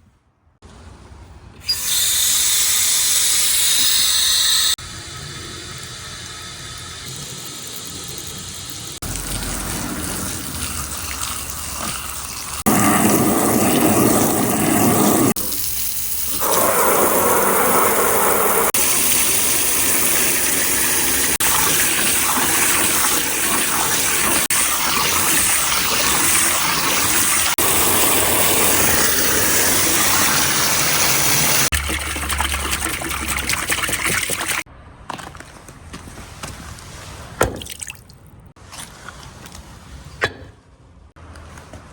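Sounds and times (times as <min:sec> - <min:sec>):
water gushing through channels: 0:07.0 - 0:34.7.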